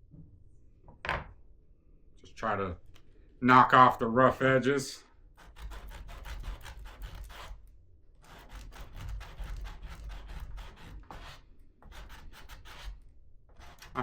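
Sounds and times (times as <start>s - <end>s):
sandpaper rubbing wood: 5.4s - 7.6s, 8.2s - 14.0s.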